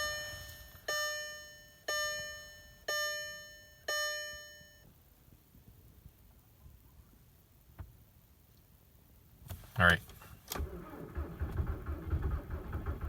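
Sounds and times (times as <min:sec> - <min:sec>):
dashboard warning chime: 0:00.0 - 0:04.9.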